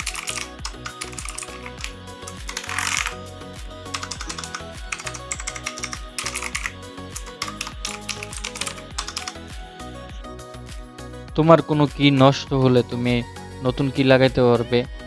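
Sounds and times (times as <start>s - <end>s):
mechanical keyboard key clicks: 0.0s - 3.2s, 4.0s - 9.4s
music with steady low beat: 0.0s - 11.1s.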